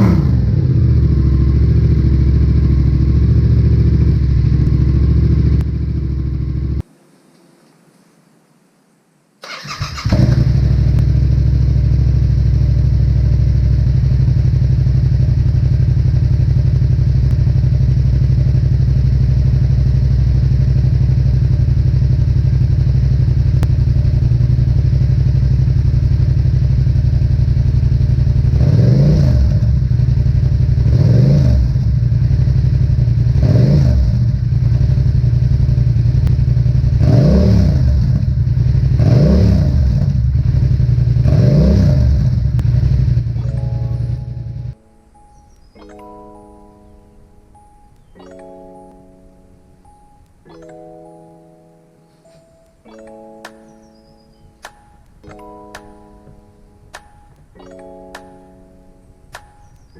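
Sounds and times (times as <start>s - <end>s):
motorcycle engine idling: 0.0s - 6.8s, 9.4s - 44.8s
throttle blips: 42.5s - 51.5s.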